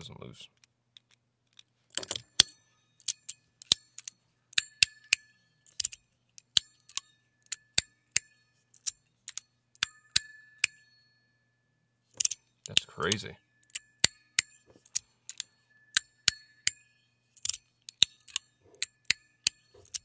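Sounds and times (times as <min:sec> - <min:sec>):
sharp metal clicks: 0:00.6 - 0:11.0, 0:12.1 - 0:20.0
bell-like ringing tone: 0:15.5 - 0:17.2.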